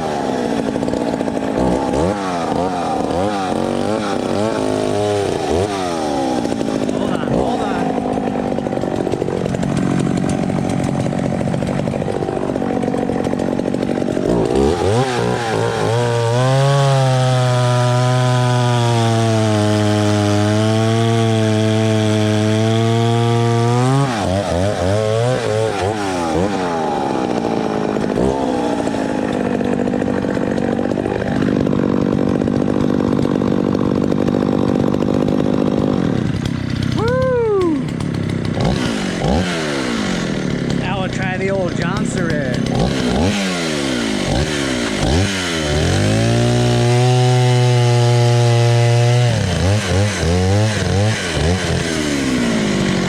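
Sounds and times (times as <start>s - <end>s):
chainsaw running: 0.0s - 53.0s.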